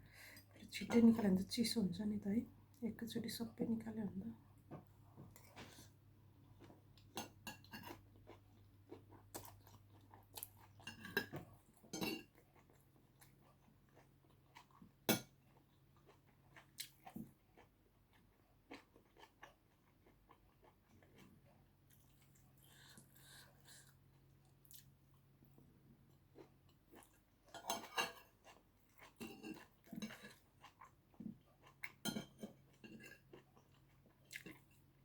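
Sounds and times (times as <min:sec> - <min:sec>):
chewing and crunching: 0:05.1 - 0:35.0
utensils clinking on a dish: 0:10.9 - 0:12.3.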